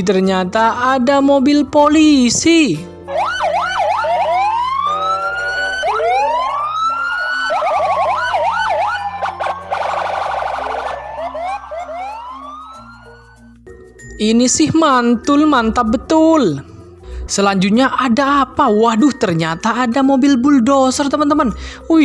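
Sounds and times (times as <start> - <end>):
toy police siren wailing: 3.1 - 13.3.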